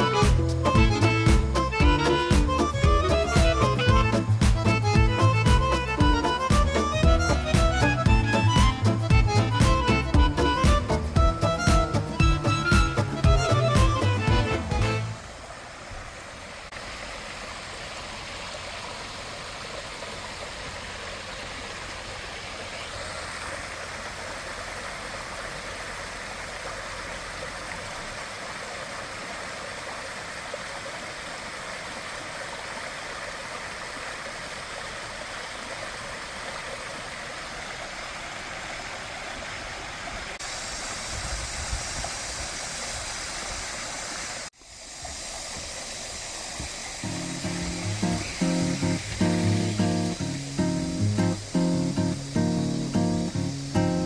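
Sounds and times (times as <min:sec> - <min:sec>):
stream running over rocks: 0:00.0 - 0:54.0.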